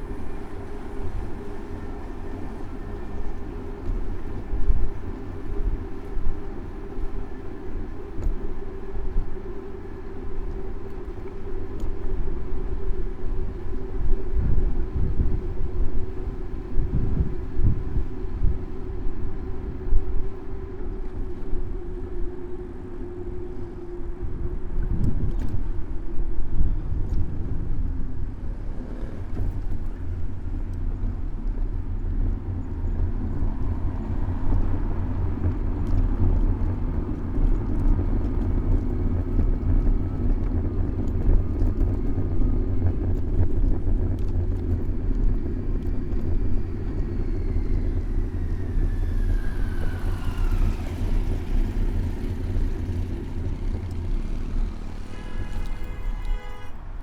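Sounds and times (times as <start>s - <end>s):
passing vehicle whine: 0.0s - 57.0s
traffic low rumble: 0.0s - 57.0s.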